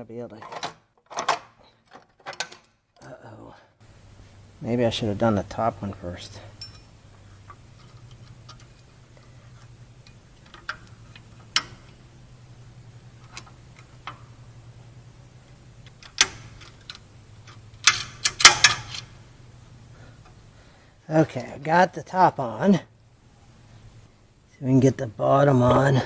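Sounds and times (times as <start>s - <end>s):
metal parts clanking: 0.3s - 2.8s, 6.3s - 12.0s, 15.8s - 19.2s
metal parts clicking: 0.4s - 2.8s, 6.3s - 12.1s, 15.5s - 19.2s
steady low hum: 3.0s - 26.0s.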